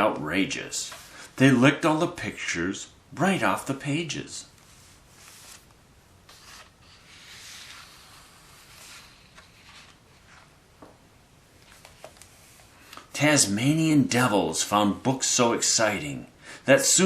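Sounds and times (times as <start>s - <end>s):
paper pages rustling and turning: 0.8s - 1.3s, 4.6s - 10.6s, 11.6s - 12.7s.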